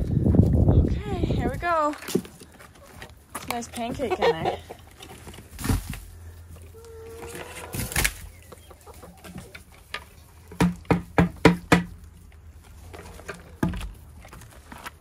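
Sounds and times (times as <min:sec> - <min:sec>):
chickens clucking: 0:02.3 - 0:10.8.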